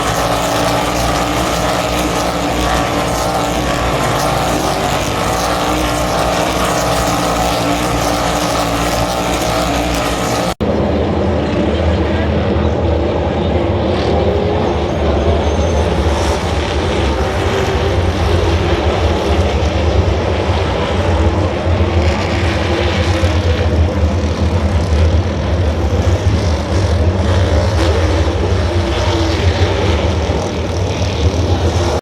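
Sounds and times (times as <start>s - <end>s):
race car engines droning: 0.0s - 32.0s.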